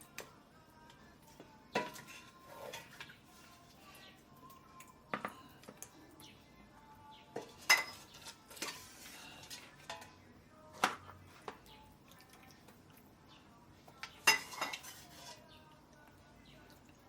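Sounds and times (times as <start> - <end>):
dishes and cutlery clinking: 1.7 - 3.2, 4.8 - 5.9, 7.3 - 11.7, 13.9 - 15.6.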